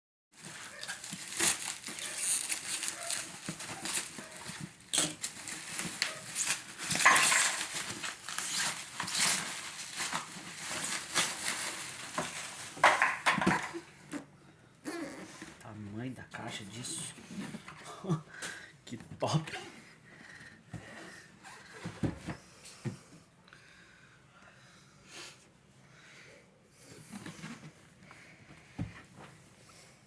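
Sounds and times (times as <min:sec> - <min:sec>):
packaging crinkling and rustling: 0:00.4 - 0:13.8.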